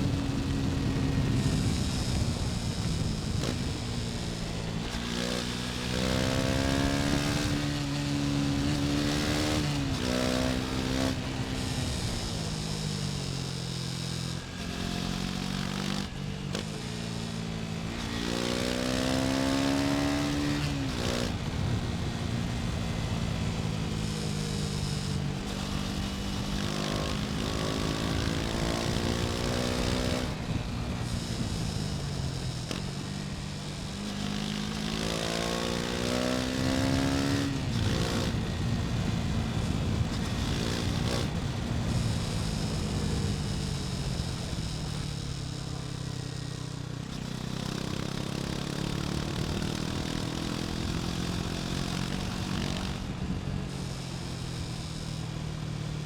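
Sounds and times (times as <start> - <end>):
wind on microphone: 0.0 - 12.5, 36.0 - 45.0
motorcycle engine revving: 0.0 - 56.0.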